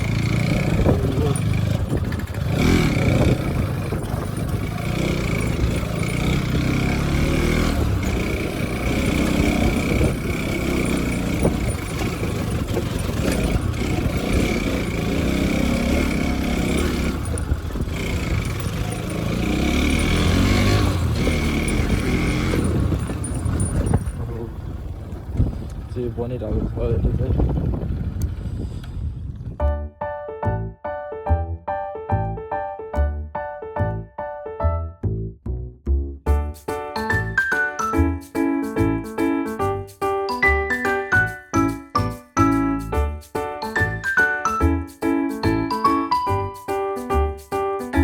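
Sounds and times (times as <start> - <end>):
motorcycle engine running: 0.0 - 29.6
road noise: 0.0 - 29.7, 36.3 - 48.0.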